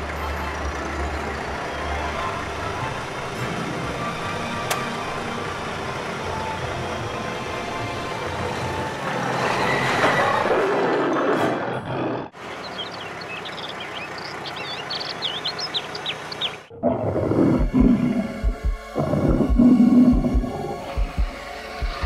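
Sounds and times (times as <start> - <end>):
music: 0.0 - 10.0, 17.4 - 22.0.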